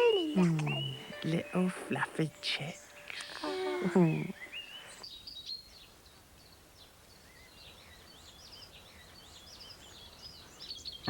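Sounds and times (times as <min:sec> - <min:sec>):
chicks cheeping: 0:00.0 - 0:01.4.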